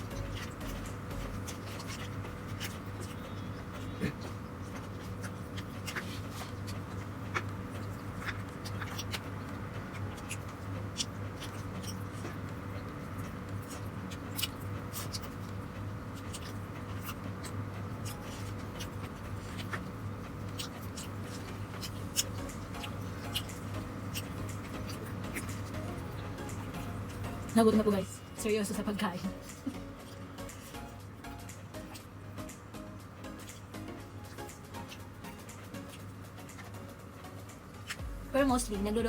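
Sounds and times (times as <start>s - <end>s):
chewing mouth clicks and smacks: 0.0s - 27.3s, 37.8s - 38.0s
steady low hum: 0.0s - 39.0s.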